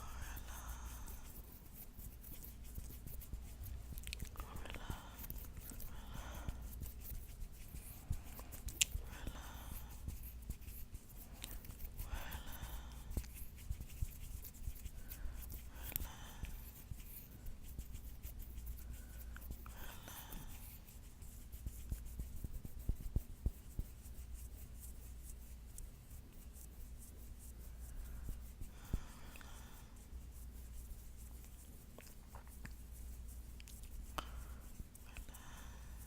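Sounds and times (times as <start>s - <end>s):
fingernails scratching a palm: 0.0s - 28.7s
slow heavy breaths: 4.4s - 6.7s, 28.0s - 30.0s, 34.2s - 36.0s.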